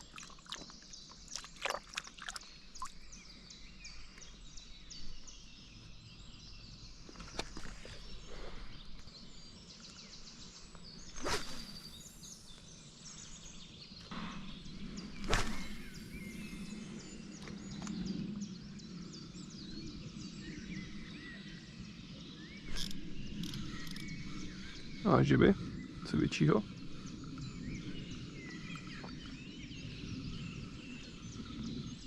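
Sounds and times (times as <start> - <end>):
songbirds singing: 0.0 - 32.0.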